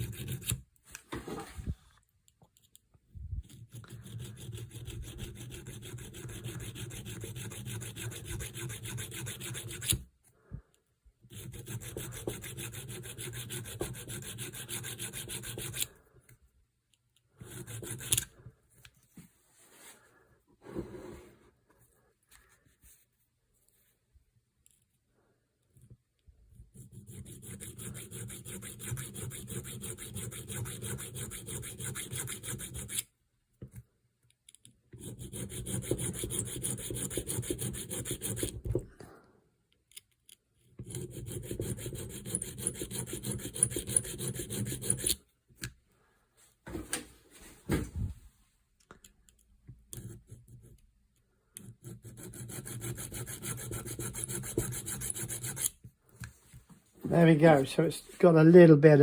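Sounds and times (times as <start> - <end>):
tool scraping steel screw head: 11.3 - 15.9, 17.4 - 18.3, 39.9 - 45.7, 51.6 - 55.8.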